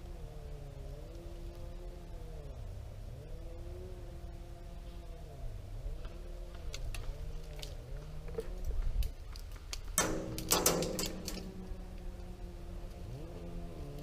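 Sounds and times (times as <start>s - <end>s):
engine revving: 11.5s - 14.0s.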